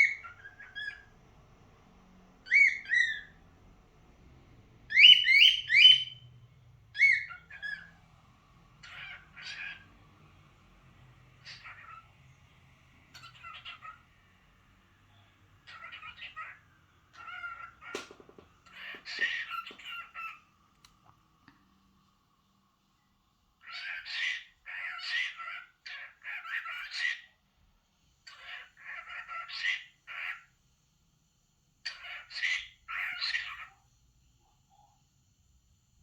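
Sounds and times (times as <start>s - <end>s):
cockatiel chattering: 0.0s - 1.1s, 8.8s - 9.8s, 13.1s - 14.1s, 15.7s - 20.4s, 23.6s - 27.3s, 31.8s - 33.8s.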